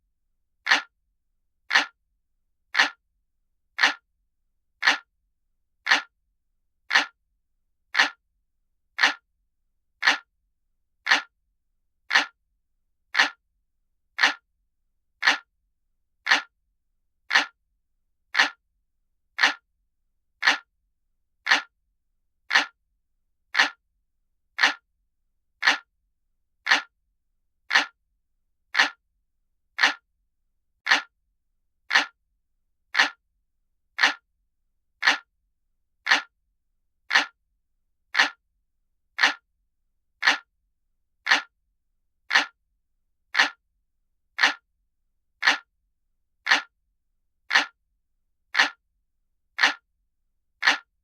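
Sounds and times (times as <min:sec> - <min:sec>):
clock ticking: 0:00.7 - 0:00.9, 0:01.7 - 0:02.0, 0:02.8 - 0:03.0, 0:03.8 - 0:04.0, 0:04.8 - 0:05.1, 0:05.9 - 0:06.1, 0:06.9 - 0:07.2, 0:08.0 - 0:08.2, 0:09.0 - 0:09.2, 0:10.0 - 0:10.3, 0:11.1 - 0:11.3, 0:12.1 - 0:12.4, 0:13.2 - 0:13.4, 0:14.2 - 0:14.4, 0:15.2 - 0:15.5, 0:16.3 - 0:16.5, 0:17.3 - 0:17.6, 0:18.4 - 0:18.6, 0:19.4 - 0:19.6, 0:20.4 - 0:20.7, 0:21.5 - 0:21.7, 0:22.5 - 0:22.8, 0:23.6 - 0:23.8, 0:24.6 - 0:24.8, 0:25.6 - 0:25.9, 0:26.7 - 0:26.9, 0:27.7 - 0:28.0, 0:28.8 - 0:29.0, 0:29.8 - 0:30.0, 0:30.8 - 0:31.1, 0:31.9 - 0:32.2, 0:33.0 - 0:33.2, 0:34.0 - 0:34.2, 0:35.0 - 0:35.3, 0:36.0 - 0:36.3, 0:37.1 - 0:37.4, 0:38.1 - 0:38.4, 0:39.2 - 0:39.4, 0:40.2 - 0:40.5, 0:41.2 - 0:41.5, 0:42.3 - 0:42.6, 0:43.3 - 0:43.6, 0:44.4 - 0:44.6, 0:45.4 - 0:45.7, 0:46.4 - 0:46.7, 0:47.5 - 0:47.8, 0:48.5 - 0:48.8, 0:49.6 - 0:49.8, 0:50.6 - 0:50.9.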